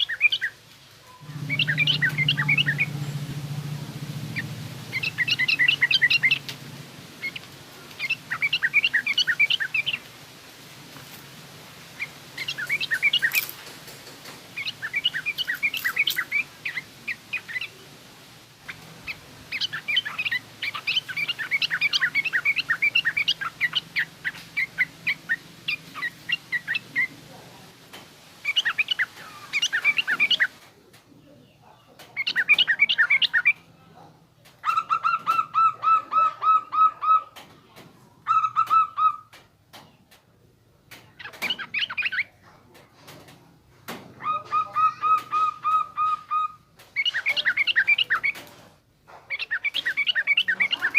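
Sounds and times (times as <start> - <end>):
bird chattering chirps: 0.0 - 3.2, 4.3 - 6.5, 7.2 - 10.0, 12.0 - 13.6, 14.6 - 17.8, 18.6 - 27.1, 28.4 - 30.6, 32.2 - 33.6, 41.2 - 42.4, 44.2 - 48.4, 49.3 - 50.9
bird repeated lower notes: 1.1 - 3.4.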